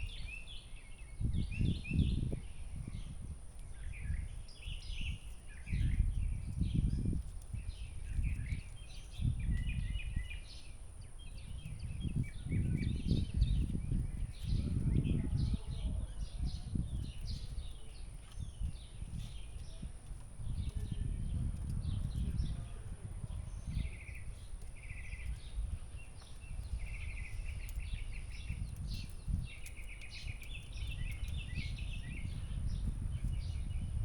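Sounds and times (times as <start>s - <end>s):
small birds chirping: 0.0s - 34.0s
gusty low rumble: 11.4s - 17.8s, 18.4s - 29.6s, 30.3s - 34.0s.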